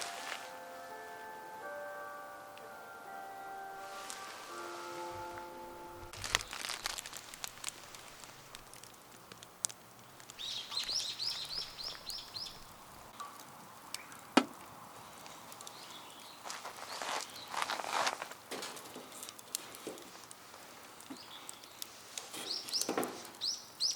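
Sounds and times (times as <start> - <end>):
bird chirping: 10.4 - 14.3, 15.6 - 17.6, 21.1 - 21.8, 22.4 - 23.9.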